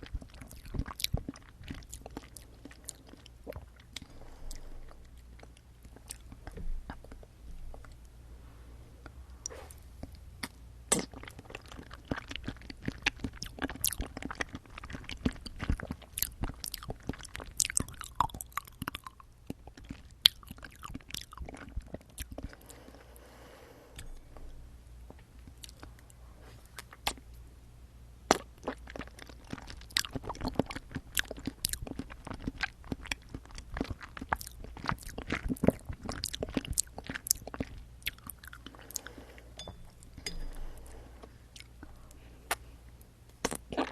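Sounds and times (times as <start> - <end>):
wet chewing mouth clicks: 0.0 - 8.1, 9.0 - 22.7, 28.3 - 40.5
steady low hum: 0.0 - 43.9.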